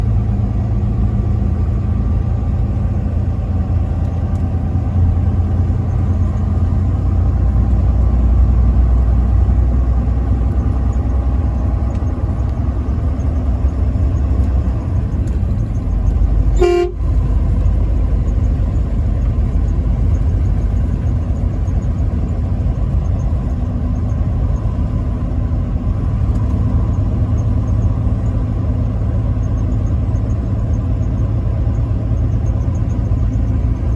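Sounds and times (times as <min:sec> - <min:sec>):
vehicle driving rumble: 0:00.0 - 0:33.9
truck horn blasts: 0:16.4 - 0:17.4.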